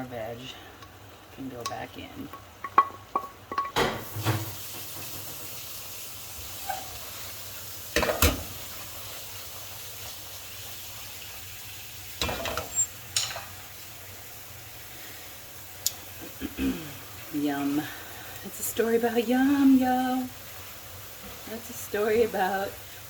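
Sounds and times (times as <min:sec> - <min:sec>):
stir-fry sizzling in a hot pan: 0:00.0 - 0:23.0
utensil scraping a pan: 0:06.5 - 0:07.3.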